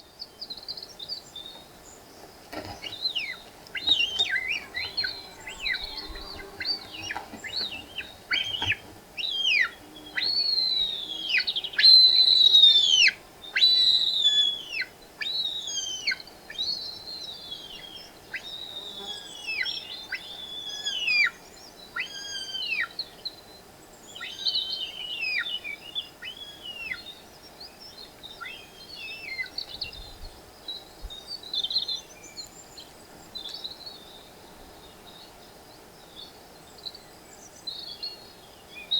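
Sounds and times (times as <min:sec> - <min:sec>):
bird chirps: 0:02.7 - 0:14.6
bird whistling downward notes: 0:03.7 - 0:16.1.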